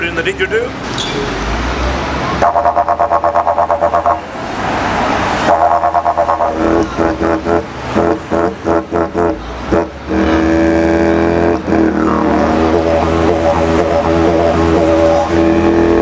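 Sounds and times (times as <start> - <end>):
didgeridoo drone: 2.4 - 16.0.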